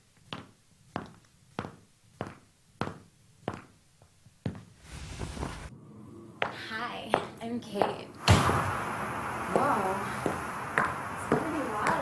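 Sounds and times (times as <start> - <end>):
hard footsteps in a small room: 0.1 - 5.7.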